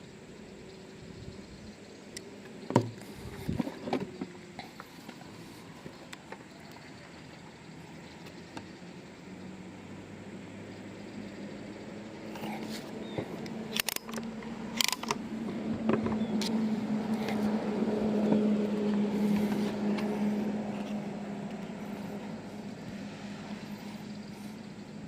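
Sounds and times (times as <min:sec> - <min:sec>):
vehicle engine humming: 0:00.0 - 0:25.0
sharp clicks: 0:13.4 - 0:15.2.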